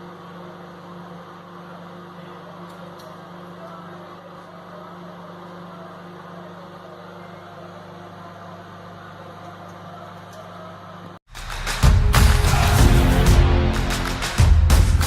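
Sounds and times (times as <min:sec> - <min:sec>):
microwave oven humming: 0:00.0 - 0:11.2.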